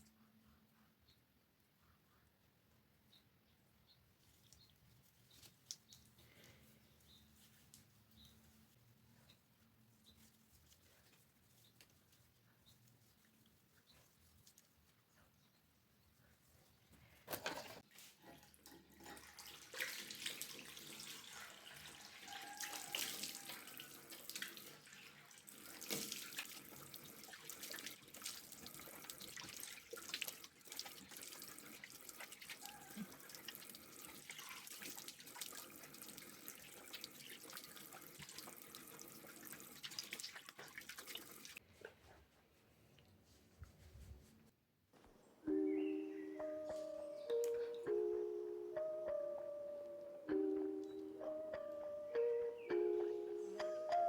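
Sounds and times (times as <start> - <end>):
tap water running into sink: 18.4 - 32.6, 33.2 - 41.6.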